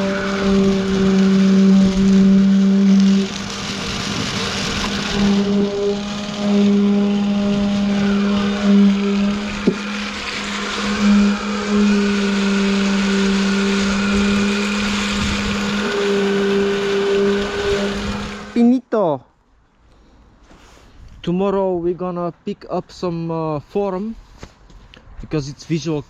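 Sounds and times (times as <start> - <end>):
motor humming: 0.0 - 18.6.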